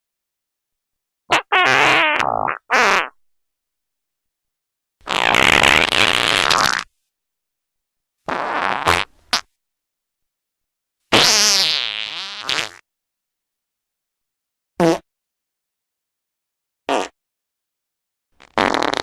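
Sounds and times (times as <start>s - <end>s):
fart sounds: 1.3s - 3.2s, 5.0s - 6.9s, 8.3s - 9.5s, 11.1s - 12.9s, 14.8s - 15.0s, 16.9s - 17.2s, 18.4s - 19.0s.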